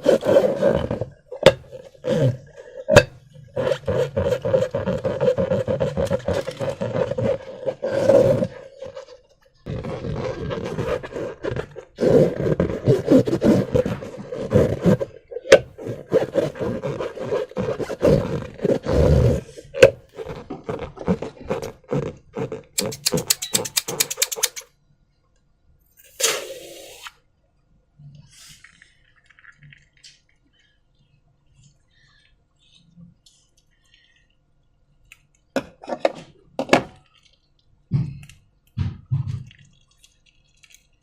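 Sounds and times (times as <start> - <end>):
slime squelching in balloons: 0.0 - 24.6.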